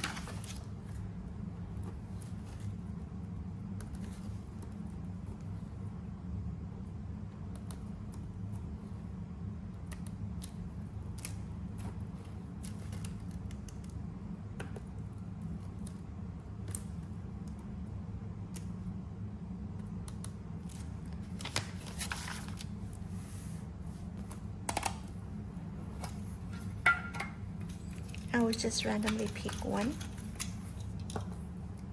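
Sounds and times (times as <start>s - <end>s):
paper rustling: 0.0s - 1.1s, 20.7s - 24.4s
steady low hum: 0.0s - 31.9s
scissors cutting paper: 28.0s - 31.0s.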